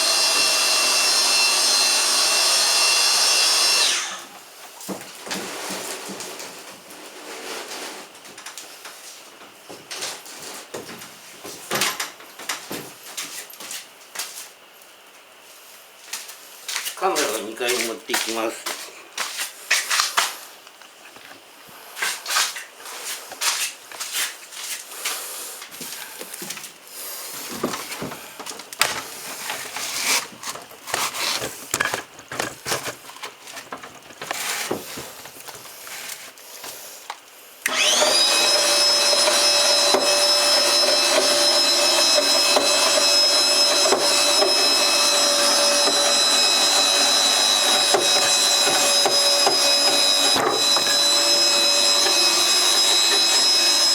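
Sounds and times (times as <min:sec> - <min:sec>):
electric motor whining: 0:00.0 - 0:04.3, 0:37.7 - 0:53.9
handling knocks and clicks: 0:30.3 - 0:35.6.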